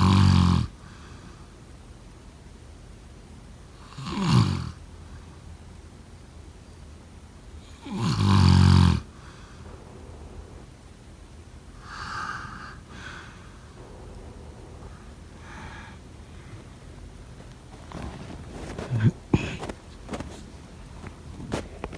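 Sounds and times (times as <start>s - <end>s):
person snoring: 0.0s - 0.7s, 3.9s - 4.8s, 7.7s - 9.8s, 11.8s - 16.6s
soft breaths: 0.8s - 2.2s, 9.0s - 21.9s.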